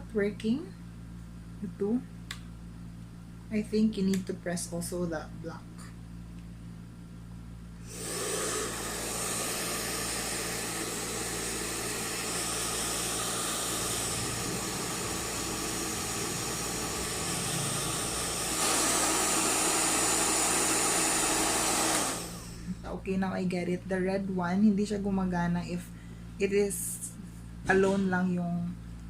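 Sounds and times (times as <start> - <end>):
hair dryer blowing air: 7.8 - 22.8.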